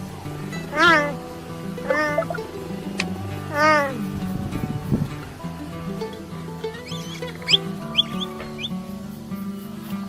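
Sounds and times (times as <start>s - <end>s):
plucked guitar music: 0.0s - 10.0s
small animal chirps: 0.5s - 1.2s, 1.8s - 2.4s, 6.8s - 8.8s.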